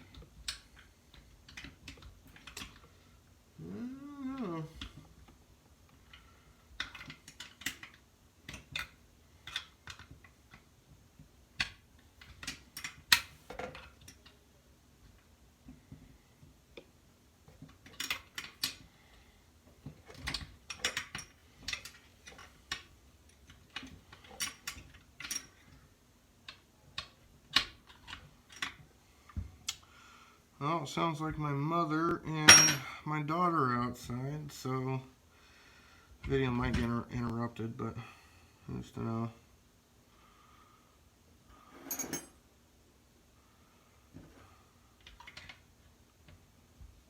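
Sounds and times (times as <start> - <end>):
wrench clinking on bolts: 32.5 - 33.0, 41.8 - 42.4.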